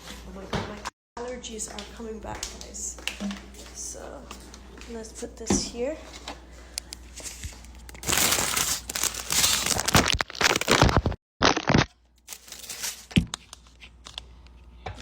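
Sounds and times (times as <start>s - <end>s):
crinkling and crunching handling: 6.1s - 14.6s.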